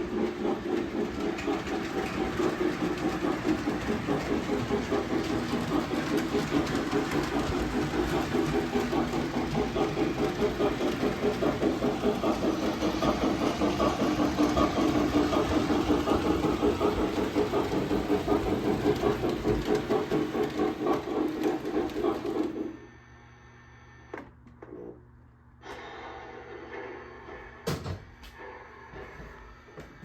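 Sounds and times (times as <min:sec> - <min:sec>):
model train motor and wheels: 0:00.0 - 0:22.7
steam chuffing: 0:00.0 - 0:22.7.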